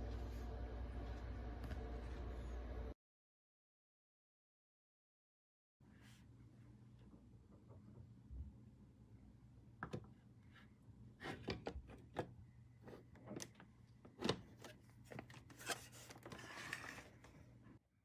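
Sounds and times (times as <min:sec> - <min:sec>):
steady low hum: 0:00.0 - 0:03.0.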